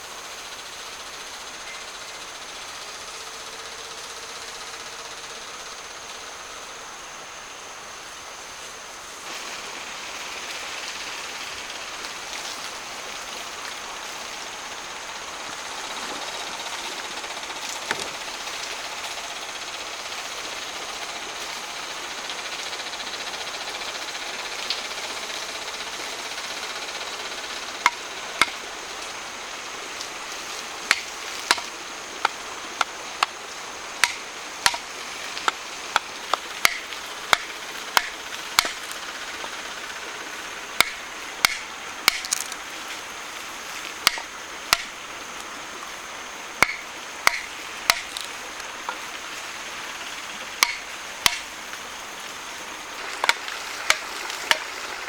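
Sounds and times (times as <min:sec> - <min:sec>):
background hiss: 0:00.0 - 0:55.0
hand tool knocking on wood: 0:30.9 - 0:33.3, 0:34.0 - 0:38.8, 0:40.8 - 0:42.5, 0:44.0 - 0:44.9, 0:46.6 - 0:48.3, 0:50.6 - 0:51.5.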